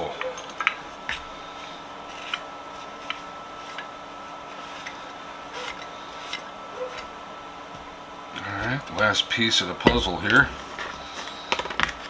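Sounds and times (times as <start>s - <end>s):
small metal parts clicking: 0.0s - 1.2s
steady background hum: 0.0s - 12.0s.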